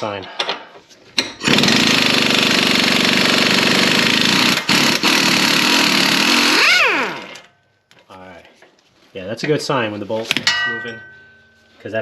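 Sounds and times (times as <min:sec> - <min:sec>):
impact wrench hammering: 0:01.2 - 0:07.5.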